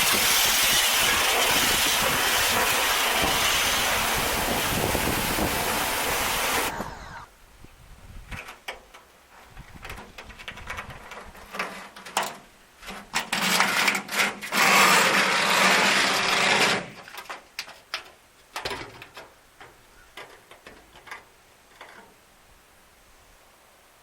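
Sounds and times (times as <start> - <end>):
pressure washer spraying metal: 0.0 - 6.9.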